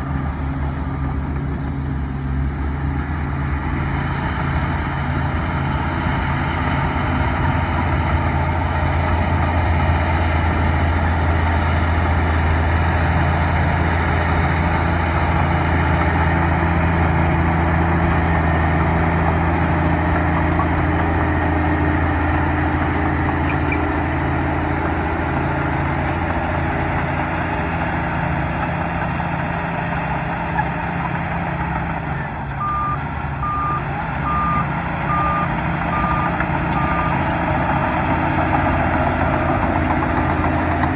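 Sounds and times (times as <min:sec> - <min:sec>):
bulldozer diesel engine running: 0:00.0 - 0:40.9
reversing alarm beeping: 0:32.6 - 0:37.2.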